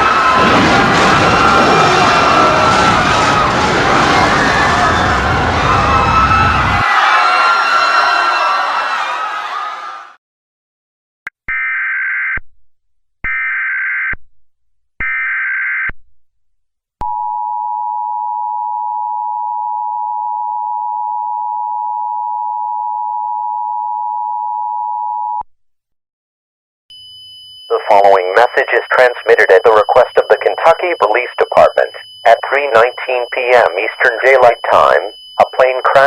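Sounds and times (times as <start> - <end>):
loud noisy din: 0.0 - 10.1
two-tone attention signal: 26.9 - 36.0
warbling data bursts: 27.7 - 36.0.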